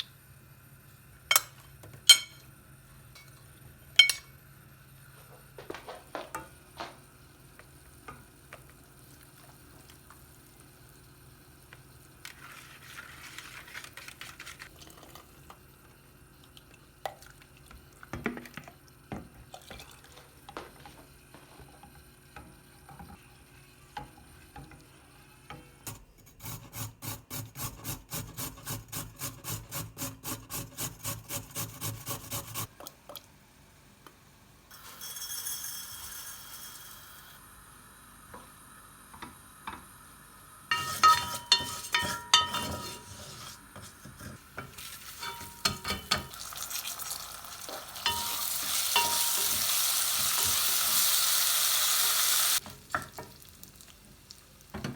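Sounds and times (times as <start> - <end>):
utensils and cookware clattering: 1.3 - 2.5, 4.0 - 4.3, 40.7 - 53.4
utensil stirring: 25.9 - 32.7, 40.7 - 53.4
food sizzling in a frying pan: 44.4 - 54.8.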